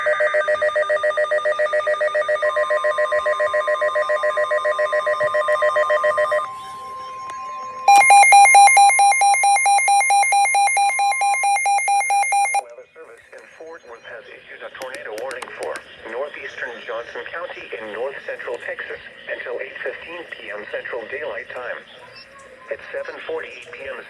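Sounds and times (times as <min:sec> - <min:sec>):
fast-pulsing electronic alarm: 0:07.9 - 0:12.6
rapidly alternating alert tone: 0:07.9 - 0:12.6.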